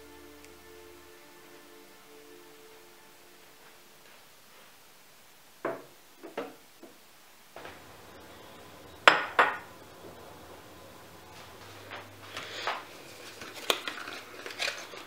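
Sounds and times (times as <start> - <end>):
household knocks and clunks: 5.6 - 7.0
low steady hum: 7.0 - 15.0.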